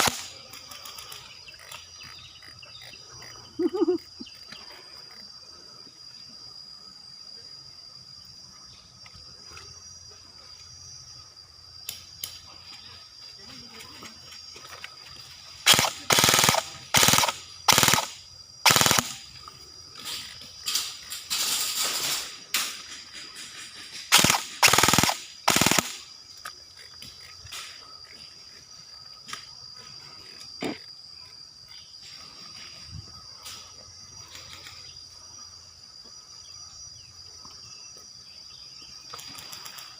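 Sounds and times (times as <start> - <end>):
airsoft guns firing bursts: 0.0 - 0.3, 15.6 - 19.2, 24.1 - 26.0.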